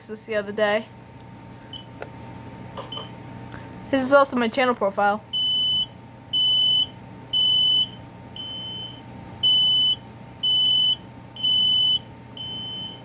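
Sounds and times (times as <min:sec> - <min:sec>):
smoke alarm beeping: 0:05.4 - 0:13.0.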